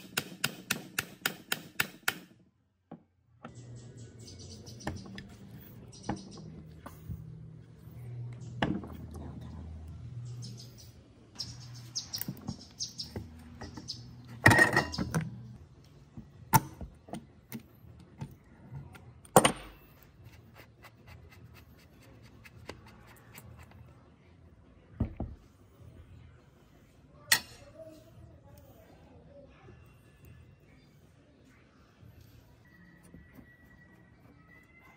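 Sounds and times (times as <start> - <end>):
low steady hum: 3.1 - 34.7
tool parts clicking and scraping: 12.1 - 15.5.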